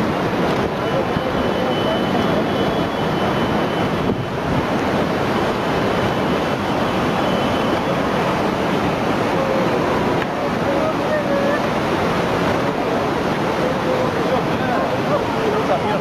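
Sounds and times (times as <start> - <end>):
rushing floodwater roar: 0.0 - 16.0.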